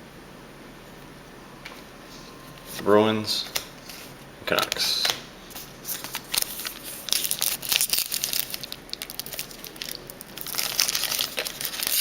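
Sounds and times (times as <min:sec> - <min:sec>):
wrapper crinkling while torn: 0:05.5 - 0:12.0.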